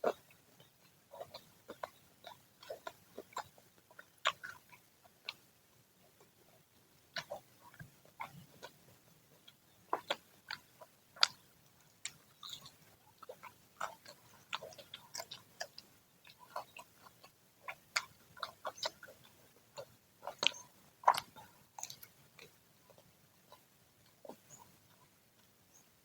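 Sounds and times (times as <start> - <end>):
chewing crispy fritters: 0.0 - 26.0
wet mouth clicks: 1.2 - 5.4, 10.0 - 11.4, 12.0 - 22.6.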